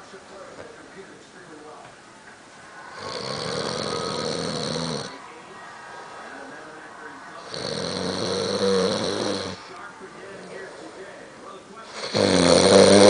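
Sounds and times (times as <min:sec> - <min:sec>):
quiet breathing: 0:02.6 - 0:12.3
man snoring loudly: 0:02.9 - 0:05.2, 0:07.4 - 0:09.6, 0:11.9 - 0:13.0.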